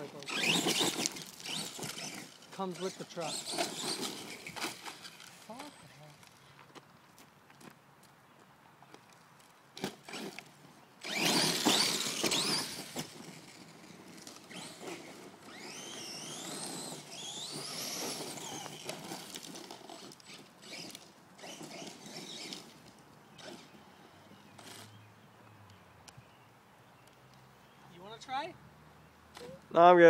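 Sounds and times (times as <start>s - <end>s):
tyre noise on rough ground: 0.0s - 25.1s
toy truck motor whine: 0.2s - 5.2s, 11.0s - 22.8s.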